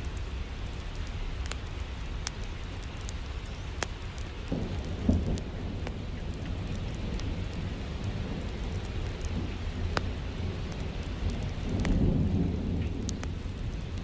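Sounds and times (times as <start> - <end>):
fireplace fire crackling: 0.0 - 14.0
steady rain: 0.0 - 14.0
low roll of thunder: 4.4 - 14.0.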